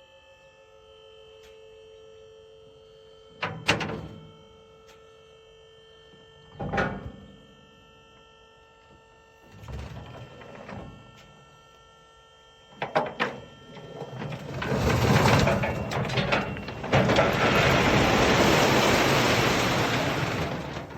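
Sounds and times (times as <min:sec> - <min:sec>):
heavy equipment running: 0:12.7 - 0:20.9
metallic clanks: 0:12.8 - 0:20.9
loose rock being dumped: 0:12.9 - 0:20.9.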